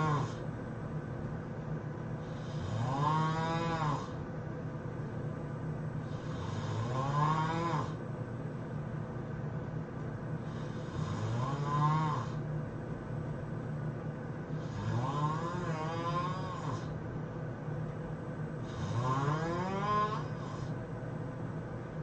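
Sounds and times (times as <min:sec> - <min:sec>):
man snoring loudly: 0:00.0 - 0:00.4, 0:02.3 - 0:04.2, 0:06.1 - 0:08.0, 0:10.5 - 0:12.4, 0:14.6 - 0:16.9, 0:18.6 - 0:20.7.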